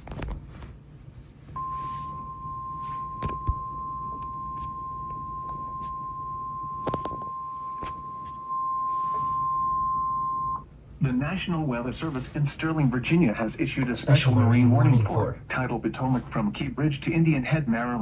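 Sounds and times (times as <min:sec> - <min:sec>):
steady single-pitch alarm tone: 0:01.6 - 0:10.7.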